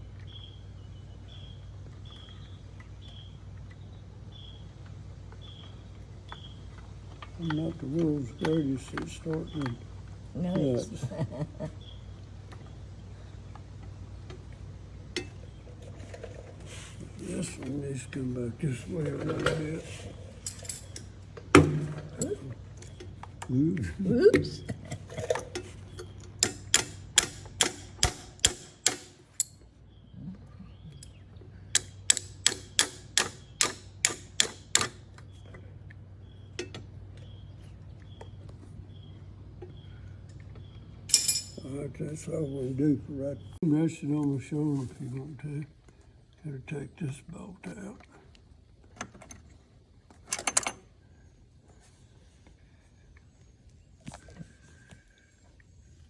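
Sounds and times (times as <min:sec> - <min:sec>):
hand tool metal clicks: 0:25.3 - 0:29.6, 0:31.0 - 0:35.0.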